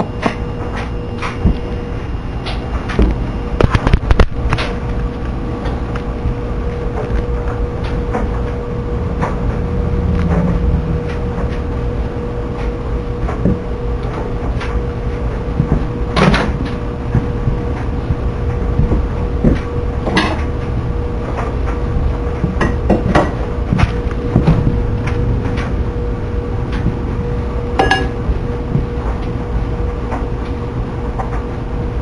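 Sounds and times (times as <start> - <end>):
microwave oven humming: 0.0 - 32.0
mid-pitched tone: 27.5 - 28.2.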